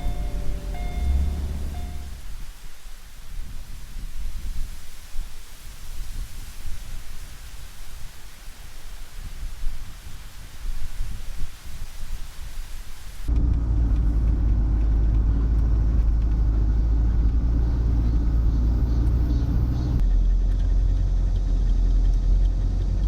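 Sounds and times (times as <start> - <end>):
car road rumble from inside: 0.0 - 2.6, 13.2 - 23.0.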